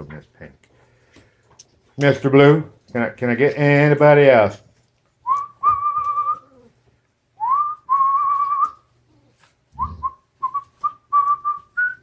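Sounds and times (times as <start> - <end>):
person whistling: 5.2 - 6.5, 7.4 - 8.9, 9.8 - 12.0.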